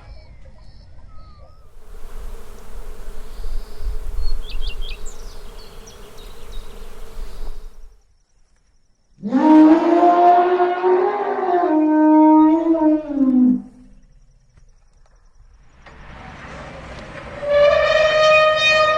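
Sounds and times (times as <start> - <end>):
elephant call: 1.7 - 7.9
droning buzz: 1.7 - 8.0
short high chirps: 1.8 - 7.9.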